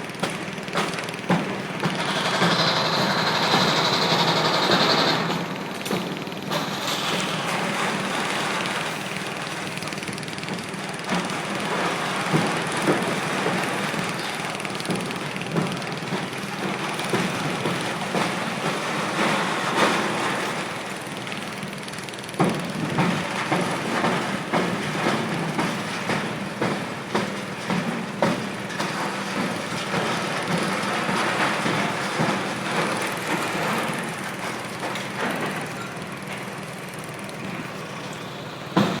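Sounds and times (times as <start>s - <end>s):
heavy demolition machinery running: 0.0s - 39.0s.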